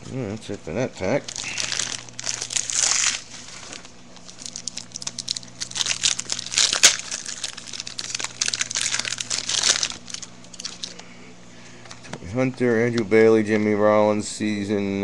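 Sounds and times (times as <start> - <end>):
foil wrapper crinkling: 1.0 - 11.1.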